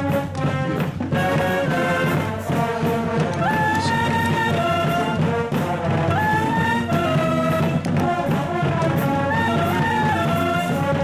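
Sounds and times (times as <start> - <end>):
marching band brass playing: 0.0 - 11.0.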